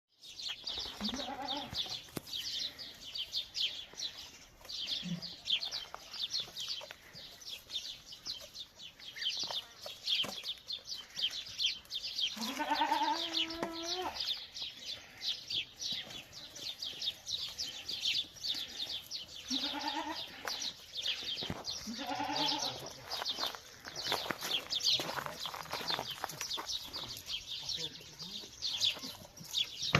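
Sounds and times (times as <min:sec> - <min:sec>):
goats bleating: 0:01.0 - 0:01.9, 0:12.3 - 0:14.3, 0:19.4 - 0:20.7, 0:21.8 - 0:23.0.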